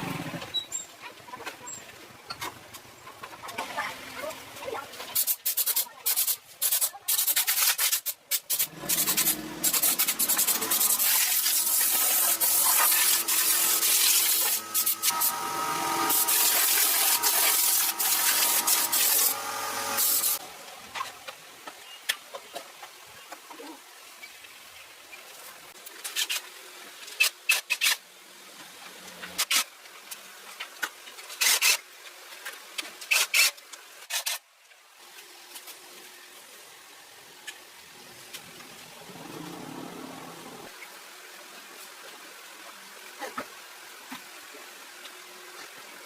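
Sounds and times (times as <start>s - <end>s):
sanding rasp and hiss: 5.2s - 20.4s.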